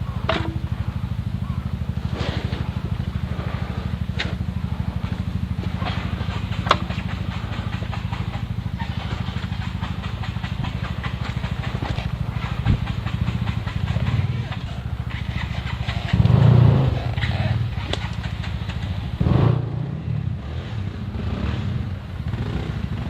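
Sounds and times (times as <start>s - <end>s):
motorcycle engine running: 0.0s - 23.0s
dull thump: 0.2s - 0.8s.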